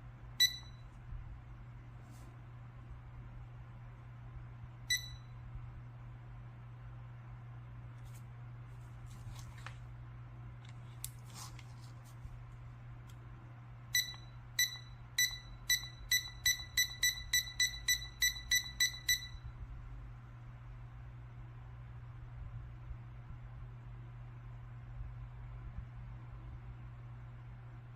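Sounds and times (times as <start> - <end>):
thermometer beeping: 0.4 - 1.0, 4.8 - 5.4, 13.9 - 19.6.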